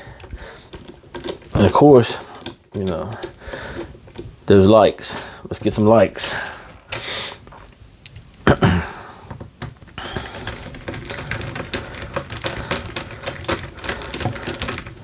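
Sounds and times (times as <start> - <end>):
light clicks and taps: 0.0 - 6.0.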